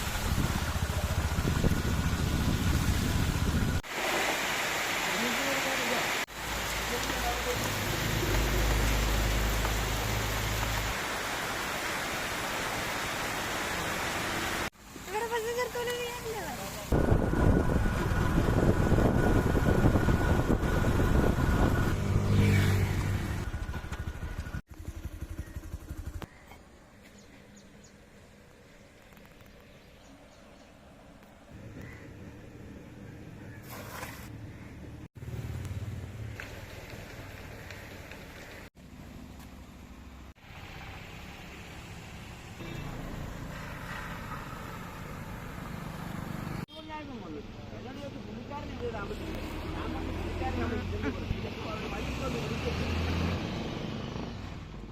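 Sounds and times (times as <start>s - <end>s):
vehicle engine running: 0.0s - 3.8s, 17.0s - 27.2s
vehicle engine and road rumble: 0.0s - 4.0s, 6.0s - 54.9s
quiet outdoor background: 22.2s - 51.1s.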